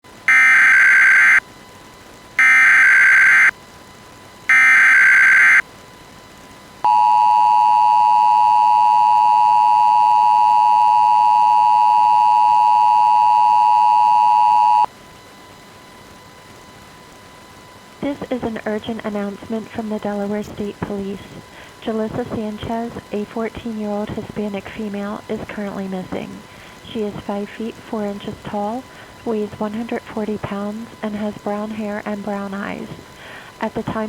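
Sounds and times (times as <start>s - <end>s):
data tone bursts: 0.3s - 1.4s, 2.4s - 3.5s, 4.5s - 5.6s, 6.9s - 14.9s
two-tone attention signal: 0.3s - 1.4s, 2.4s - 3.5s, 4.5s - 5.6s, 6.9s - 14.9s.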